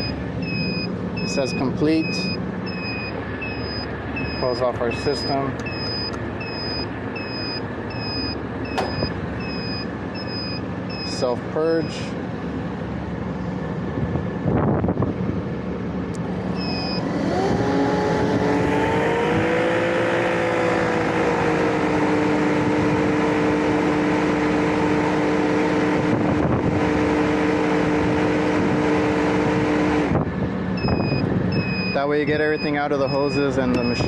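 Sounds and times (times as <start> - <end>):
machine motor whining: 0.0 - 11.3, 16.4 - 19.1.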